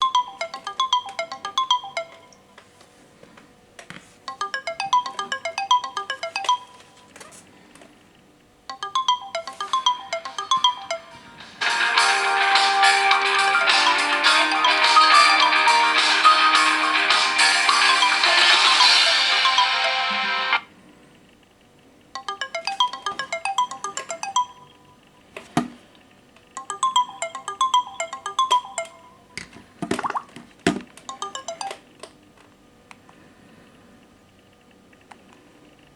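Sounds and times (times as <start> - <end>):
bell-like phone ringtone: 0.0 - 2.5, 4.3 - 7.2, 8.7 - 20.6, 22.2 - 25.0, 26.6 - 29.4, 31.1 - 31.9.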